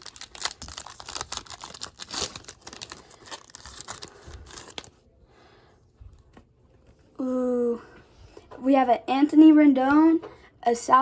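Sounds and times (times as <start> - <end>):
foil wrapper tearing and crinkling: 0.0 - 5.0.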